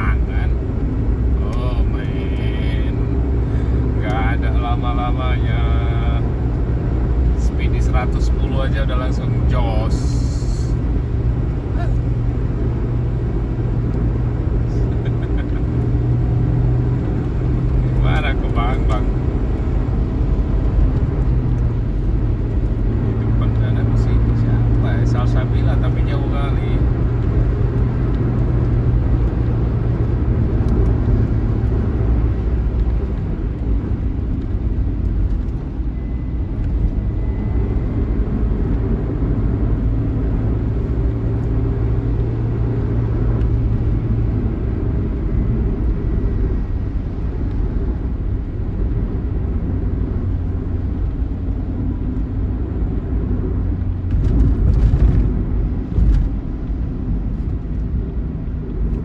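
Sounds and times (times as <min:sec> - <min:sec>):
coach engine drone: 0:00.0 - 0:59.0
road rumble: 0:00.0 - 0:59.0.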